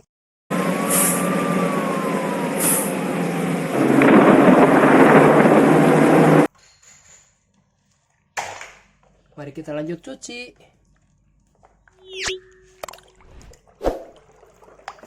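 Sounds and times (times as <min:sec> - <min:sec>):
tank engine rumble: 0:00.5 - 0:06.5
hissing: 0:00.6 - 0:06.5.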